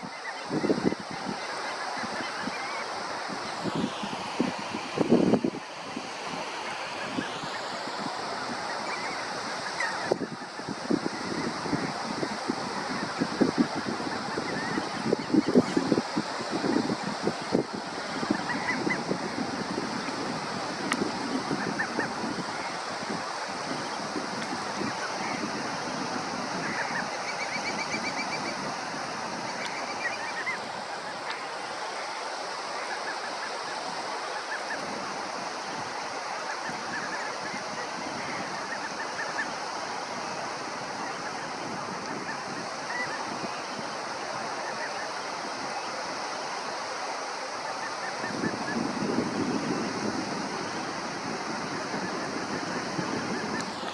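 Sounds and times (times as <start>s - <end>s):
sea surf: 0.0s - 53.9s
wind: 0.0s - 53.9s
shorebird calls: 12.8s - 25.6s, 26.5s - 35.0s.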